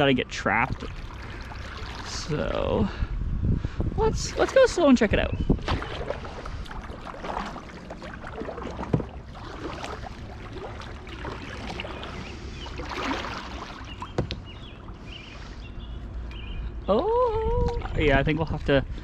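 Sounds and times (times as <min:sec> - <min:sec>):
paddle splashing water: 0:00.6 - 0:02.6, 0:04.2 - 0:15.7
sharp knocks: 0:08.8 - 0:09.2.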